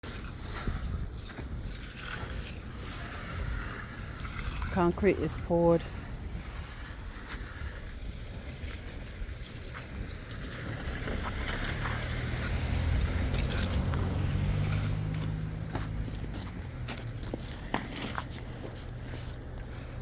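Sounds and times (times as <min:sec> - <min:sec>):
vehicle engine humming: 0:10.4 - 0:20.0.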